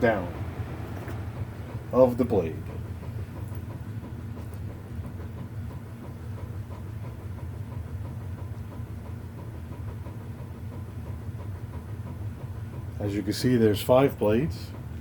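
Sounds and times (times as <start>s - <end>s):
box fan coasting down: 0.0s - 15.0s.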